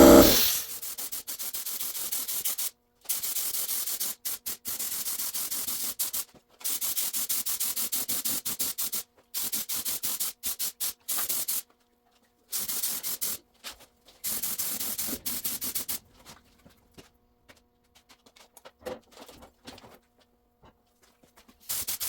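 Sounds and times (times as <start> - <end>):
paint spray hissing: 0.0 - 0.7.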